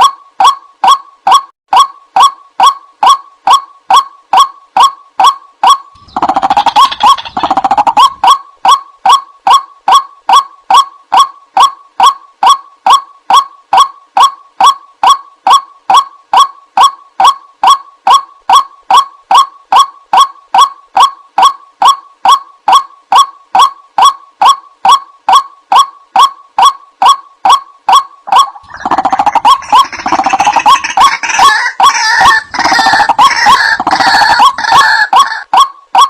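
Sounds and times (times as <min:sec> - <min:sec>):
rattling bird call: 0:00.0 - 0:12.6, 0:25.7 - 0:35.8
waterhen calling: 0:05.2 - 0:10.8, 0:25.7 - 0:36.0.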